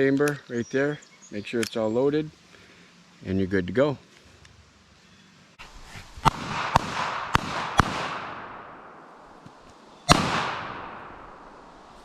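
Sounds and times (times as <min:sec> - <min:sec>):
pistol shots: 0:06.2 - 0:09.0, 0:10.1 - 0:11.7
long rolling echo: 0:06.3 - 0:09.4, 0:10.1 - 0:12.0.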